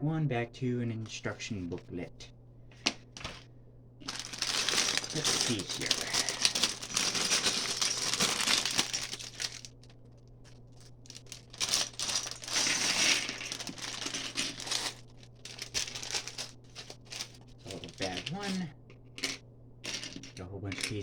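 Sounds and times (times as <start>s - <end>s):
plastic bag crinkling: 2.8s - 3.4s, 4.0s - 18.7s.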